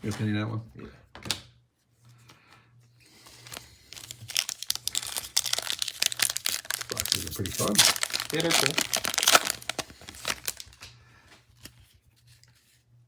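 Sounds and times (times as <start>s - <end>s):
plastic wrapper crinkling and tearing: 3.2s - 10.9s.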